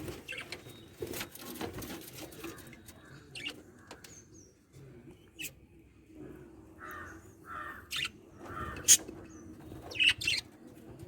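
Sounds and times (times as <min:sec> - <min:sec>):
lovebirds squawking: 0:06.8 - 0:10.4.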